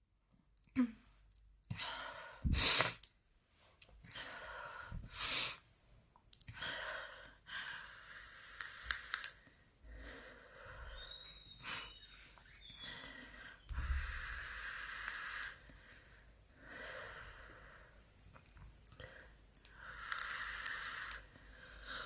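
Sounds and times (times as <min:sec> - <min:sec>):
woman breathing heavily: 0:04.0 - 0:05.6, 0:06.5 - 0:08.8, 0:09.4 - 0:12.0, 0:12.7 - 0:18.1, 0:19.0 - 0:22.0.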